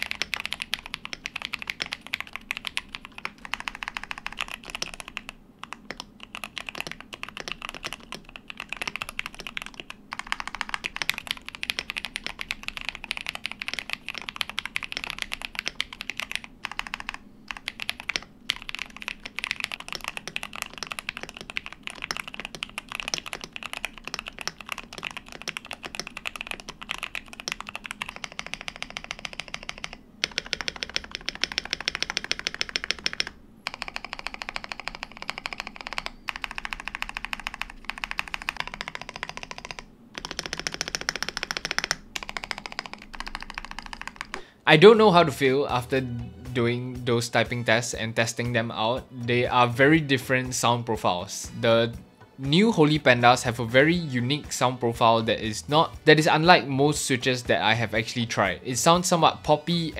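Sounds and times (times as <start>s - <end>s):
mechanical keyboard typing: 0.0s - 44.5s.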